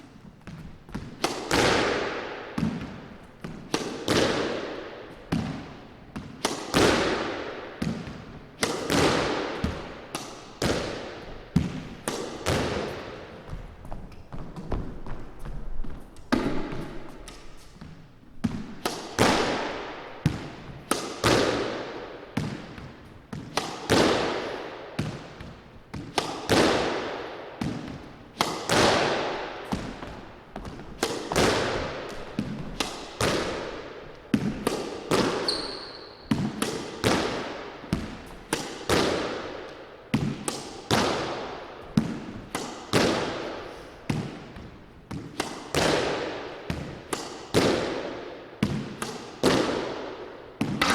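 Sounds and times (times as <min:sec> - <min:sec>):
squash ball hit by racquet: 0:00.0 - 0:50.9
high shoe squeak: 0:35.2 - 0:36.5.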